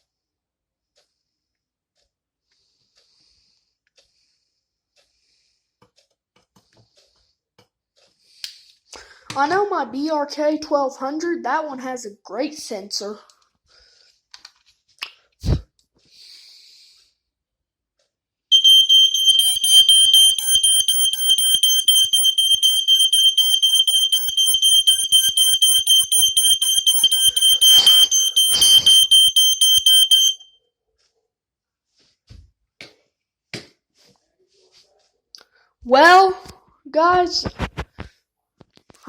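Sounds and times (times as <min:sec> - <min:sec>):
smoke alarm high-pitched tone: 0:18.5 - 0:30.5.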